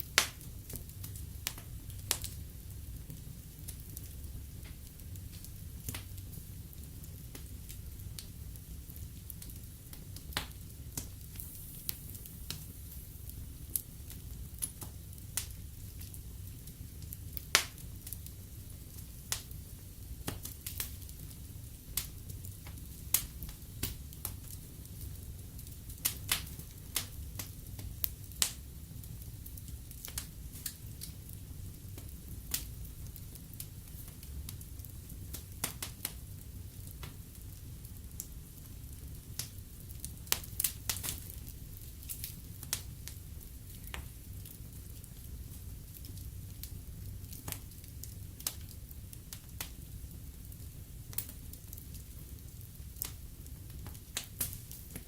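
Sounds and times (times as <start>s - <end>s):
low rumble of flames: 0.0s - 55.0s
wood fire crackling and popping: 0.0s - 55.0s.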